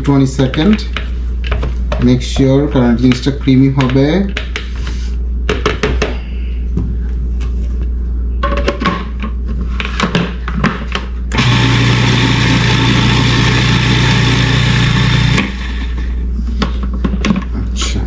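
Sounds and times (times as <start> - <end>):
food processor motor running: 11.3 - 16.0.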